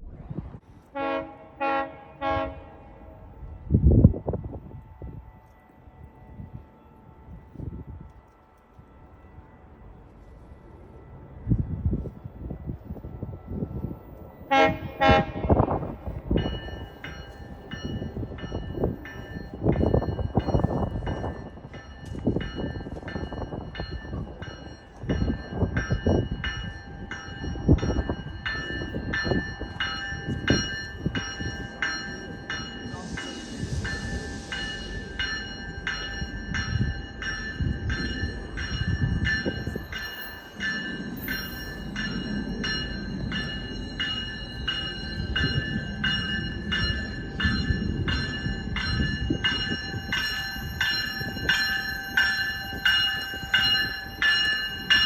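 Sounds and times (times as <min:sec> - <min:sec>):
train cars rumbling: 0:00.0 - 0:55.0
train bell ringing: 0:09.0 - 0:55.0
air hiss: 0:32.9 - 0:35.3.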